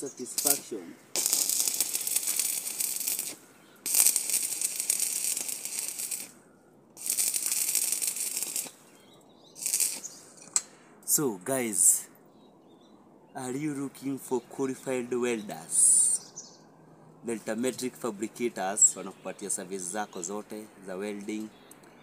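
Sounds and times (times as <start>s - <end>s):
arc welding crackling: 0.0s - 9.0s, 9.6s - 10.7s.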